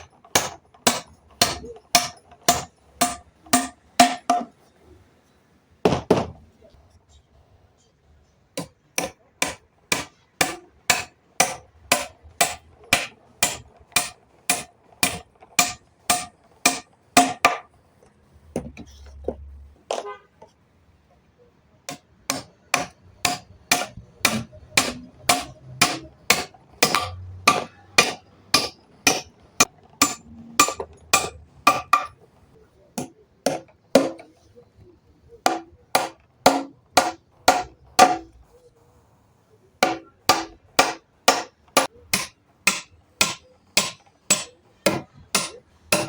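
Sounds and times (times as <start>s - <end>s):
hammer striking wood: 0.0s - 4.6s, 5.8s - 6.4s, 8.6s - 17.7s, 21.9s - 32.2s, 33.0s - 34.3s, 35.4s - 38.3s, 39.8s - 46.0s.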